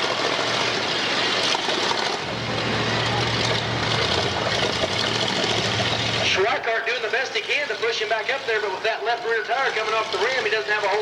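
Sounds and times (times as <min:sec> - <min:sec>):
car engines running hard: 0:00.0 - 0:11.0.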